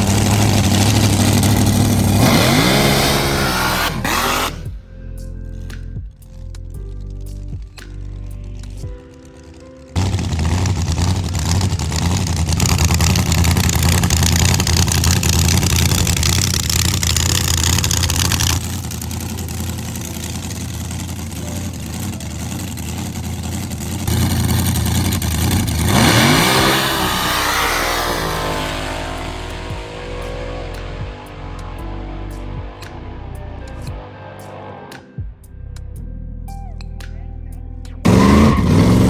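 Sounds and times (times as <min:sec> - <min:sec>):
race car engine revving: 0:00.0 - 0:04.7, 0:10.0 - 0:32.8, 0:38.0 - 0:39.0.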